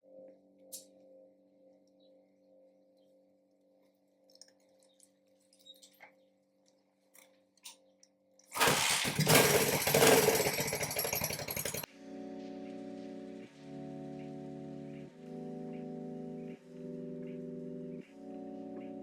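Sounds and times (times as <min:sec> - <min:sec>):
loud machine running: 0:08.6 - 0:11.9.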